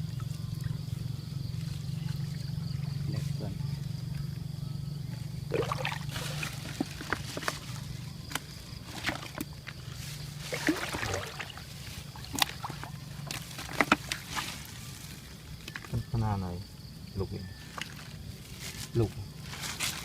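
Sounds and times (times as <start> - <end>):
low steady hum: 0.0 - 18.8
water sloshing and splashing: 5.5 - 15.0, 17.6 - 18.2.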